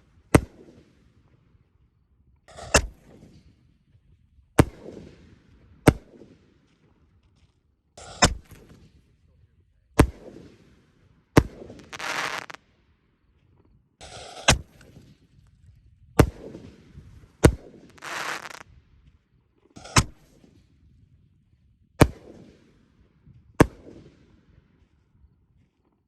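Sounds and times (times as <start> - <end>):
fireworks sharp bangs: 8.0 - 8.8, 11.4 - 12.6, 14.0 - 14.9, 16.2 - 18.6, 19.8 - 20.4
fireworks hissing rush: 11.7 - 12.6, 17.8 - 18.6.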